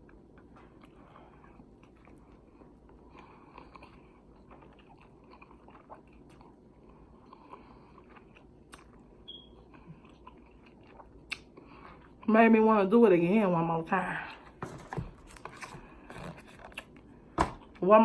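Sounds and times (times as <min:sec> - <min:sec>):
person chewing food: 0:00.0 - 0:12.3, 0:15.2 - 0:17.2.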